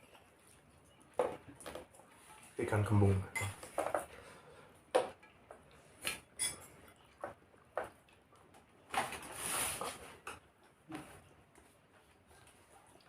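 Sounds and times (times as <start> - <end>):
cutlery clinking on a plate: 3.3 - 4.1, 6.1 - 6.8.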